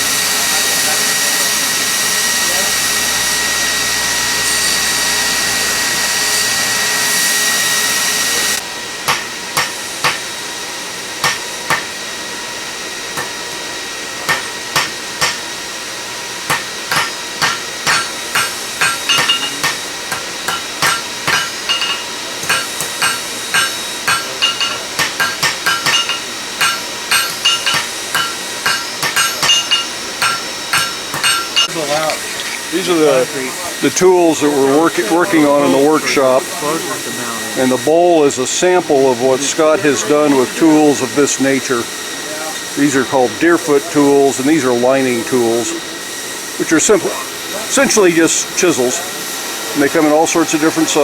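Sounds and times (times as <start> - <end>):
hammers striking steel on anvils: 9.1 - 10.3, 11.2 - 12.0, 13.2 - 13.5, 14.2 - 15.6, 16.5 - 32.2.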